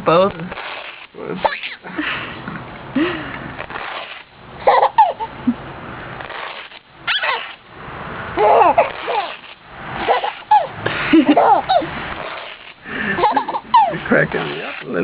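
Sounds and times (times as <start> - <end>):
baby laughing: 1.4 - 2.4, 4.6 - 5.6, 7.1 - 7.6, 8.4 - 14.8.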